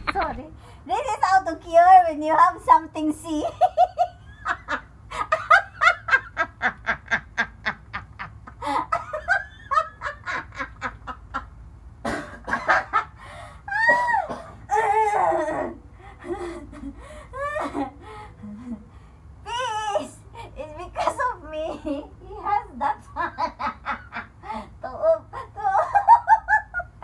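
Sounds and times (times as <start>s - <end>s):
person laughing hard: 0.0s - 0.4s.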